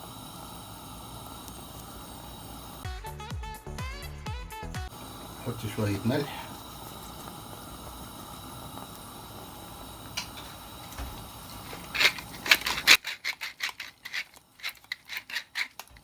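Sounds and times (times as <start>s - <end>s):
egg sizzling in a pan: 0.0s - 2.9s, 4.9s - 16.0s
utensil clicking on cookware: 10.1s - 16.0s.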